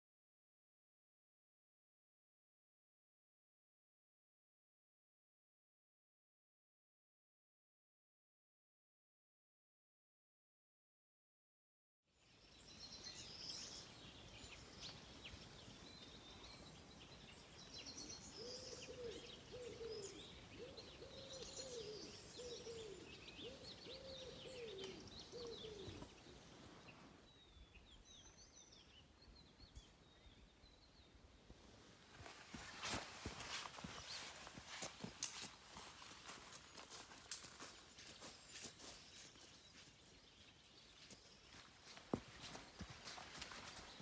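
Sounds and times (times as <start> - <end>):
countryside ambience: 12.2 - 44.0
small birds chirping: 12.2 - 44.0.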